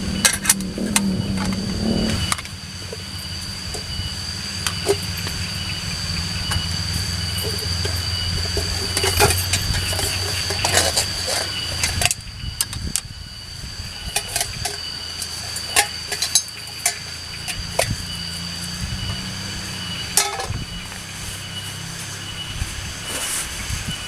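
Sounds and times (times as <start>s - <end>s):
low hum: 0.0s - 23.0s
steady high-pitched tone: 0.0s - 24.0s.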